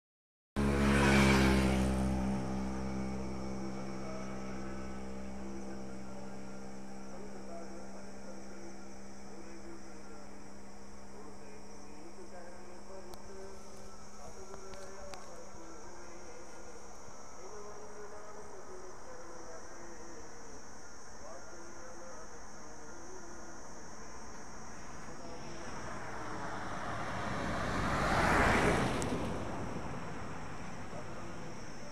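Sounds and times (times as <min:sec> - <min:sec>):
vehicle passing by: 0:00.6 - 0:10.6, 0:24.5 - 0:31.9
steady low hum: 0:01.7 - 0:27.7.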